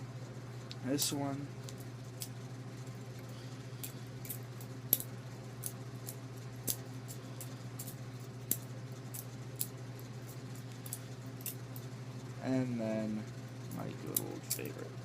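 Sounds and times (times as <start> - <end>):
low steady hum: 0.0 - 15.0
butterfly knife clicking: 3.8 - 9.7.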